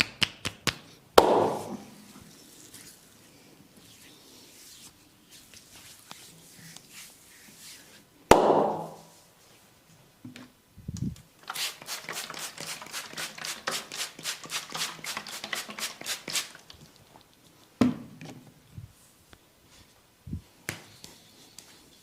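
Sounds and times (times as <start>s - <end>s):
loud sharp hand smack: 0.0s - 1.8s, 8.3s - 9.0s.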